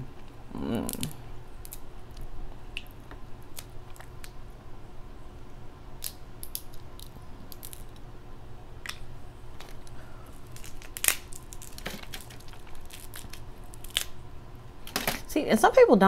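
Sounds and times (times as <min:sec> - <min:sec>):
crab shells cracking: 0:00.8 - 0:04.4, 0:06.0 - 0:08.1, 0:08.8 - 0:14.2.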